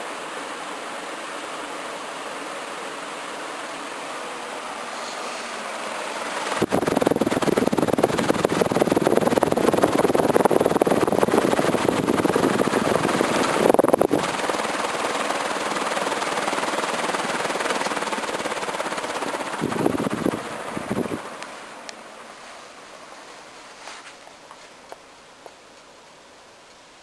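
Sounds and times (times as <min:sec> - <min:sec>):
ceiling fan air rushing: 0:00.0 - 0:27.0.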